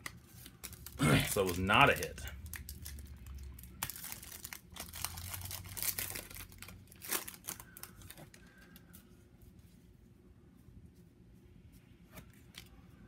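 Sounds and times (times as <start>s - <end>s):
wrapper crinkling and tearing: 0.0s - 8.7s
cards rustling: 0.0s - 9.2s.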